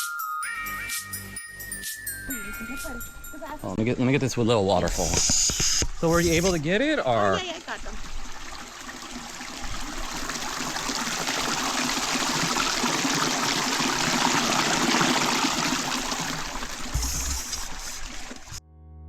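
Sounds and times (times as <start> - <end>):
small waterfall rushing: 6.0 - 18.6.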